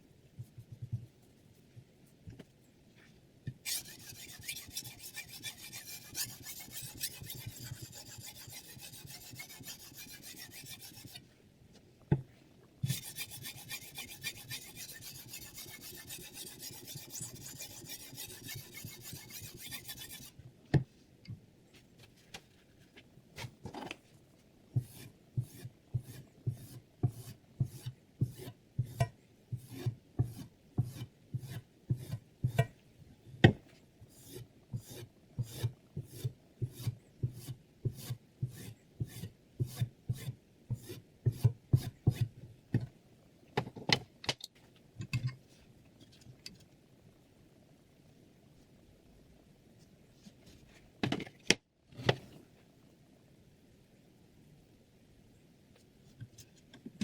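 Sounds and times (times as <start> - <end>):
knife grinding on whetstone: 3.7 - 11.2, 12.8 - 20.3.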